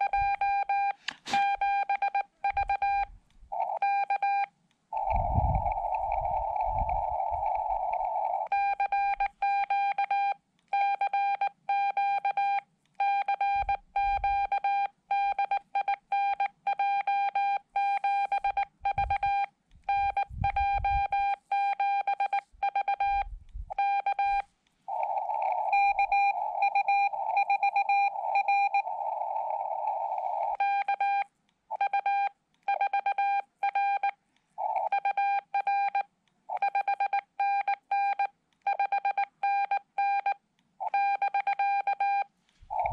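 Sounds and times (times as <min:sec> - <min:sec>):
morse code tone: 0:00.0 - 0:04.4, 0:16.2 - 0:31.2
radio band hiss: 0:05.0 - 0:08.5, 0:24.9 - 0:30.6
faint low thumps: 0:20.0 - 0:21.2.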